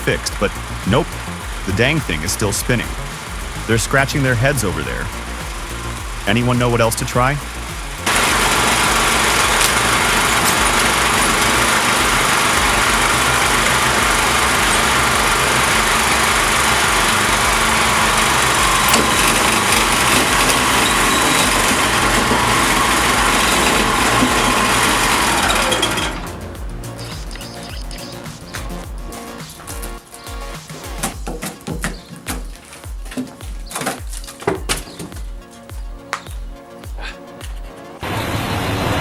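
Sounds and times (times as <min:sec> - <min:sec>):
wood chipper running: 0:00.0 - 0:30.1, 0:38.0 - 0:39.0.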